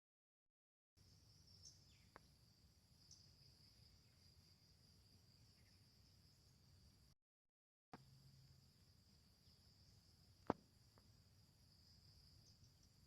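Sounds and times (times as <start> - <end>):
short insect chirps: 1.0 - 7.2, 8.0 - 13.0
high-pitched insect chirring: 3.0 - 6.6.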